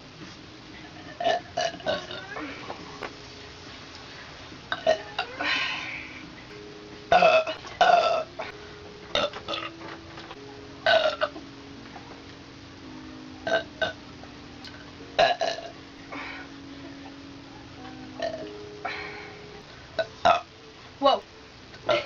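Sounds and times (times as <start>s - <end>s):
faint background music: 0.0s - 22.0s
loud burps: 1.1s - 2.7s, 4.7s - 6.0s, 7.1s - 8.5s, 9.1s - 9.7s, 10.8s - 11.4s, 13.4s - 14.0s, 14.7s - 16.5s, 18.2s - 19.0s, 20.0s - 20.5s.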